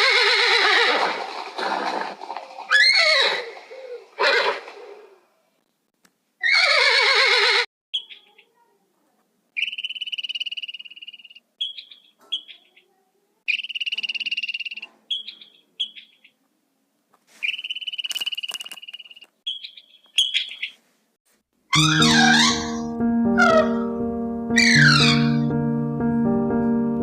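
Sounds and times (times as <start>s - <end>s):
frog calling in pulsed trills: 21.7s - 23.8s, 24.6s - 25.5s.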